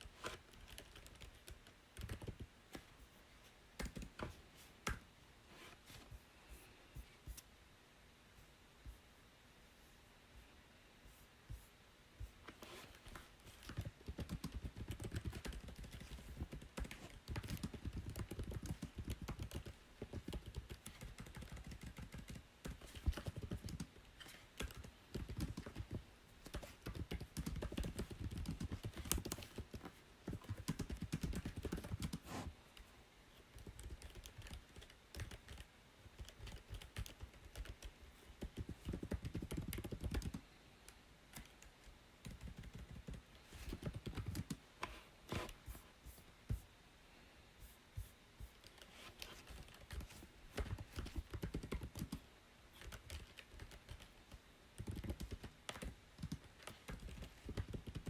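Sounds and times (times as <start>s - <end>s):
typing on keyboard: 0.4s - 2.5s, 3.8s - 4.4s, 12.9s - 32.3s, 33.5s - 44.6s, 48.6s - 52.2s, 52.8s - 58.0s.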